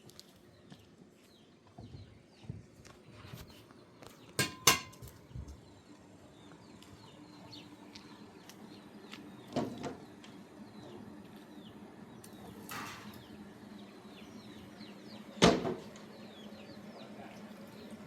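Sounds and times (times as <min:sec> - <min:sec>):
metal objects clinking: 0:04.4 - 0:05.1.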